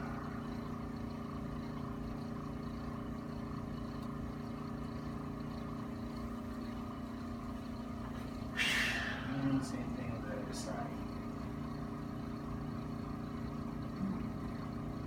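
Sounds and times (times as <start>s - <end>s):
steady mechanical hum: 0.0s - 15.0s.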